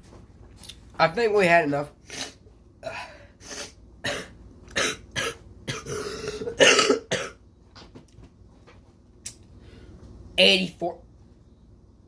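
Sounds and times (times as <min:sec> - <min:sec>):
man coughing and clearing throat: 0:04.0 - 0:07.4.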